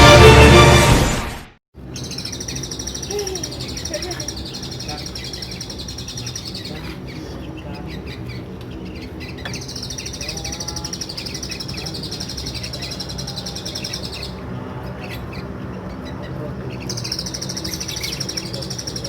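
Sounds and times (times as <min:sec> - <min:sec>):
bird high trill: 0:01.9 - 0:07.2
bird chips: 0:01.9 - 0:19.0.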